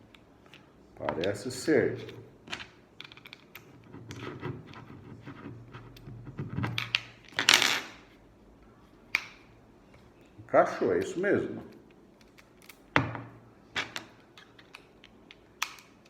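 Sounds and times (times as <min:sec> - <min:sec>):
small parts clicking and knocking: 0:02.0 - 0:04.2.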